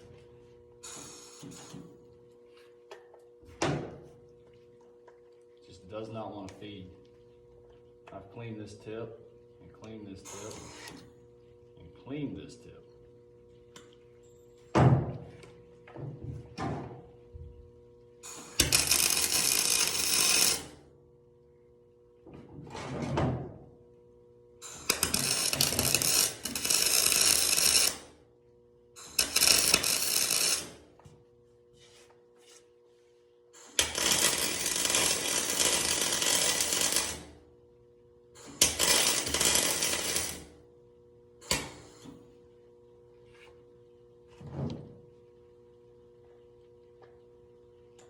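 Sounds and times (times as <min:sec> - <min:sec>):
welding arc crackling and hissing: 0:00.9 - 0:01.8, 0:18.3 - 0:20.8, 0:24.6 - 0:28.0, 0:29.0 - 0:30.8, 0:33.6 - 0:37.3, 0:38.4 - 0:40.4.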